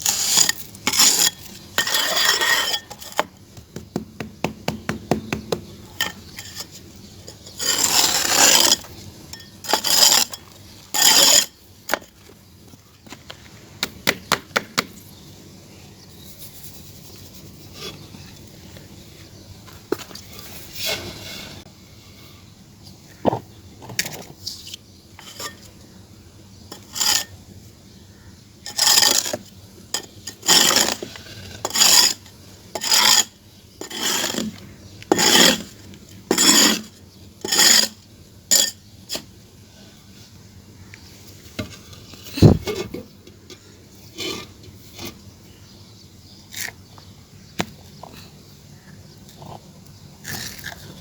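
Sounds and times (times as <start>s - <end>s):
clay being scraped: 0.0s - 3.3s, 4.9s - 11.6s, 30.0s - 32.2s, 32.8s - 35.7s, 36.3s - 39.3s.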